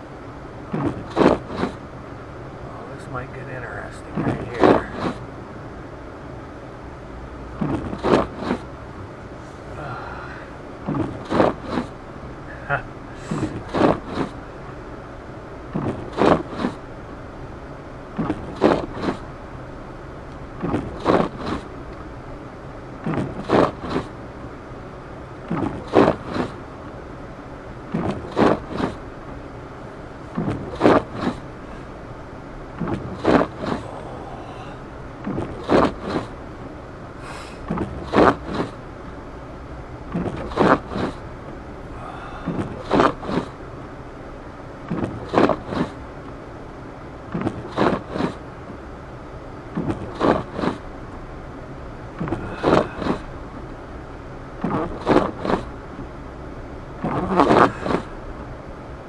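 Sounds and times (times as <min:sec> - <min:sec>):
car driving through snow: 0:00.6 - 0:01.8, 0:07.5 - 0:12.0, 0:13.2 - 0:14.6, 0:20.5 - 0:21.8, 0:23.0 - 0:24.2, 0:25.4 - 0:26.8, 0:27.8 - 0:29.2, 0:30.0 - 0:31.9, 0:32.6 - 0:36.4, 0:37.2 - 0:38.9, 0:40.0 - 0:43.6, 0:47.2 - 0:48.6, 0:49.6 - 0:50.9, 0:52.0 - 0:53.5
windshield wipers sweeping: 0:00.6 - 0:01.8, 0:03.0 - 0:05.2, 0:07.5 - 0:09.2, 0:10.8 - 0:12.0, 0:13.2 - 0:14.6, 0:15.7 - 0:16.9, 0:18.2 - 0:19.4, 0:20.5 - 0:21.8, 0:23.0 - 0:24.3, 0:25.4 - 0:26.8, 0:27.9 - 0:38.9, 0:40.0 - 0:43.6, 0:44.8 - 0:46.1, 0:47.3 - 0:48.6, 0:49.5 - 0:50.9, 0:51.9 - 0:55.9, 0:56.7 - 0:58.6.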